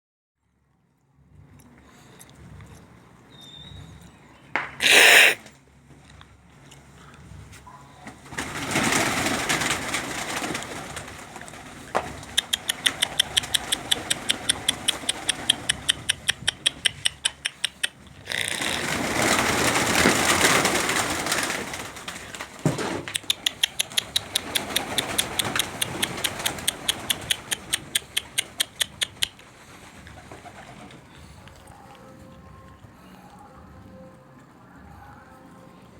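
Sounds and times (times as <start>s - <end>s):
birds clicking rapidly: 2.9s - 5.5s, 8.3s - 31.4s.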